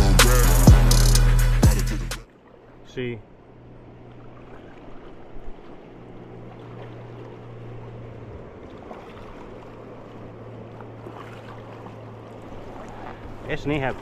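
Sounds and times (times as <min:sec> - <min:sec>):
low steady hum: 0:02.2 - 0:14.0
river water rushing: 0:03.8 - 0:14.0.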